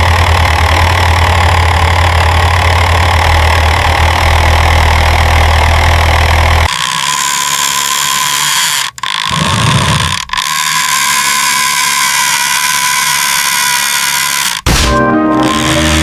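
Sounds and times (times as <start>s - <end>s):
electric motor and gears whining: 0.0s - 16.0s.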